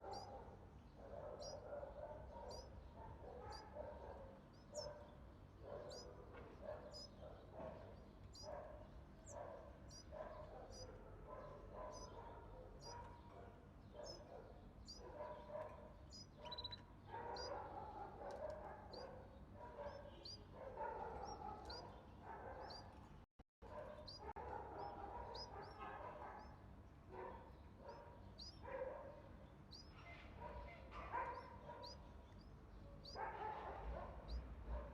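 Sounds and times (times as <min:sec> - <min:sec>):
nestlings chirping: 0:00.0 - 0:23.1, 0:23.7 - 0:34.9.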